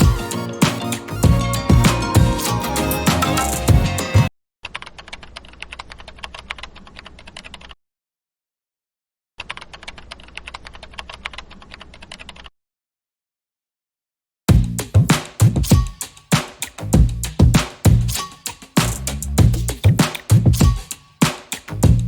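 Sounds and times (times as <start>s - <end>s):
rapid keyboard typing: 9.4s - 12.5s.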